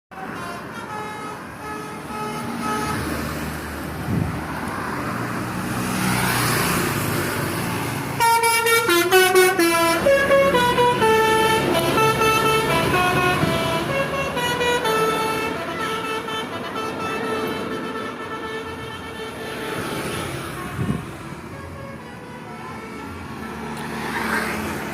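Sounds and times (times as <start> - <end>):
multi-tone horn playing a tune: 0.1 - 3.2, 8.2 - 23.2
vehicle engine and road noise: 0.1 - 24.9.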